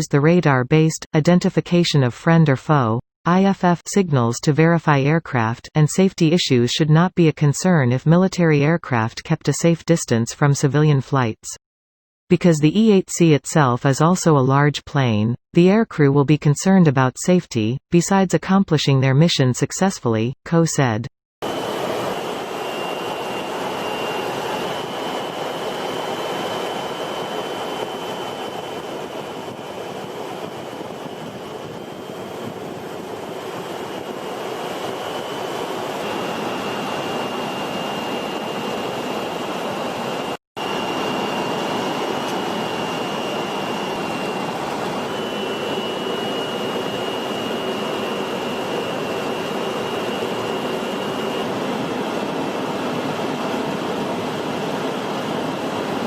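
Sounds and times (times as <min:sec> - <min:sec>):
jet engine noise: 0:21.4 - 0:56.0
thin high whine: 0:35.9 - 0:52.2.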